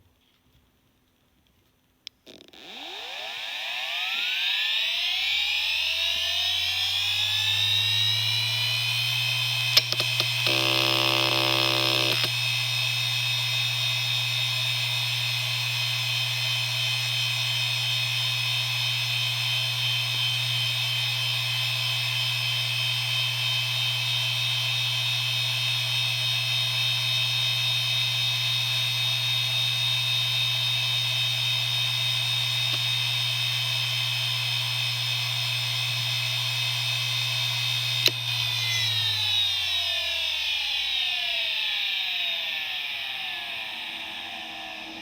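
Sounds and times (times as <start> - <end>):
hard drive humming and whining: 2.6 - 45.0
hard drive click: 9.7 - 12.3.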